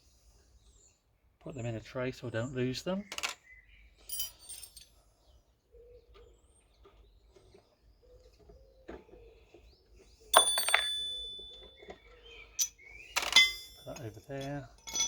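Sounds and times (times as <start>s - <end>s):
faint bird chirps: 0.2s - 4.3s, 4.9s - 10.4s
metal parts clattering: 4.1s - 4.9s, 10.4s - 12.0s, 12.6s - 15.0s.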